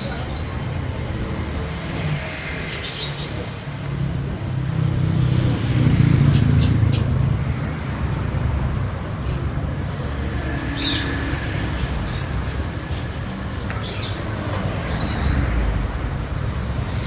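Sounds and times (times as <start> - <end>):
vehicle engine passing: 4.0 - 17.0.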